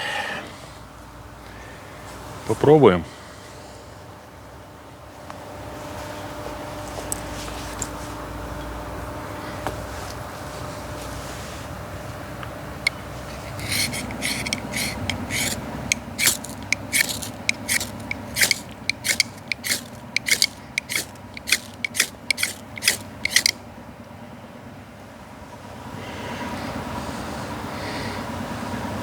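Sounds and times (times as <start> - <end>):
knife scraping fire-starter rod: 12.8 - 23.6.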